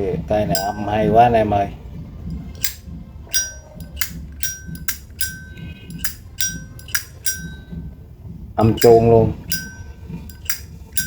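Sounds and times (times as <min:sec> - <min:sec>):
bell-like metallic ring: 0:00.6 - 0:01.4, 0:02.6 - 0:08.0, 0:08.8 - 0:11.0.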